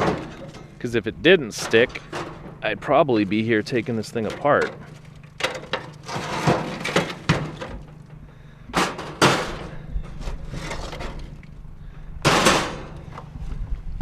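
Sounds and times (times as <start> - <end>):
scrap metal knocks: 0.0 - 0.8, 1.5 - 11.4
scrap metal scraping clatter: 0.0 - 2.8, 3.7 - 11.6.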